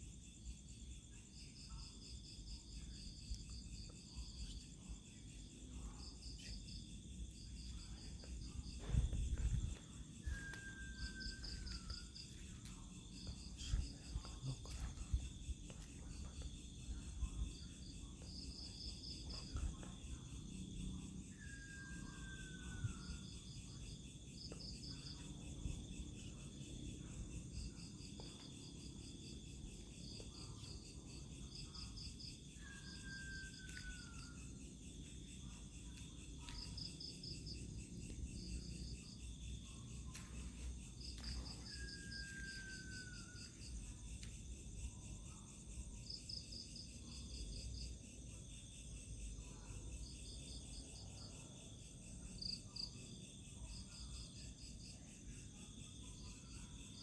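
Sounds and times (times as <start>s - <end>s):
crickets chirping: 0.0s - 57.0s
high-pitched insect drone: 4.0s - 46.7s.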